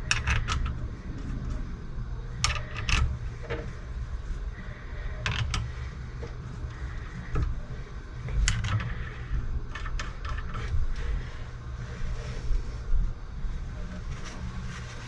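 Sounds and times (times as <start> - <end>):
clicks and knocks of metal parts: 0.0 - 0.8, 2.4 - 3.7, 5.2 - 6.4, 8.2 - 9.1, 9.7 - 10.8
steady low rumble: 0.0 - 15.0.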